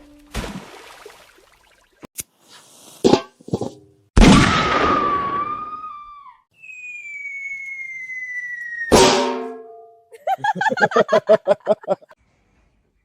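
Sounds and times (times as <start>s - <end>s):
falling whistle tone: 4.8s - 9.3s.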